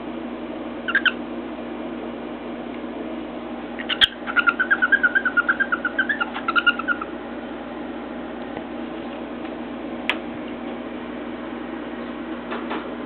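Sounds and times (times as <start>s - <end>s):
cockatiel chirping: 0.9s - 1.2s, 3.8s - 7.1s.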